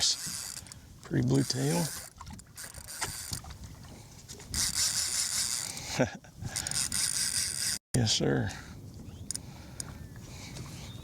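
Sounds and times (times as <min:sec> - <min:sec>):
fishing reel drag clicking: 0:00.0 - 0:03.5, 0:04.5 - 0:05.8, 0:06.5 - 0:07.8.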